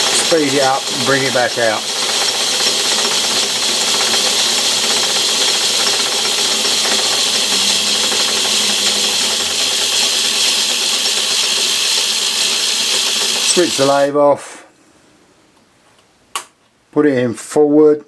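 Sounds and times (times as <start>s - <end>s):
lathe running: 0.0s - 14.2s.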